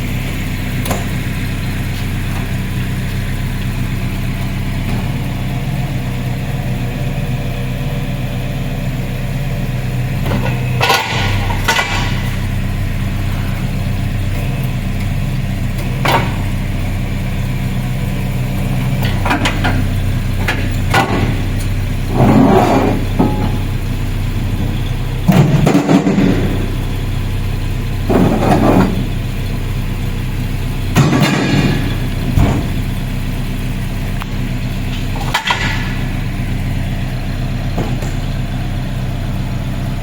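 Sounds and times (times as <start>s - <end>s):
vehicle engine idling: 0.0s - 40.0s
sharp metallic clanks and knocks: 10.2s - 12.5s, 19.0s - 23.7s, 24.6s - 26.7s, 30.9s - 33.0s, 34.9s - 36.5s.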